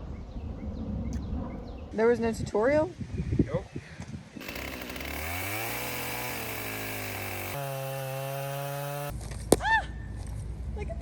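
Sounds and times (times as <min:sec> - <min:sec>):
chainsaw engine revving: 0:04.4 - 0:09.1.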